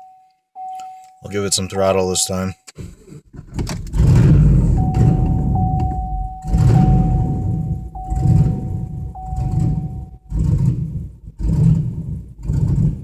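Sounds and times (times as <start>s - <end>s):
car engine running rough: 3.4s - 13.0s
high warning tone: 4.6s - 10.3s.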